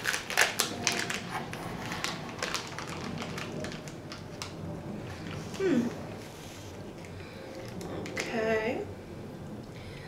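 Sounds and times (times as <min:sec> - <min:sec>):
plastic wrapper crinkling: 0:00.0 - 0:05.7.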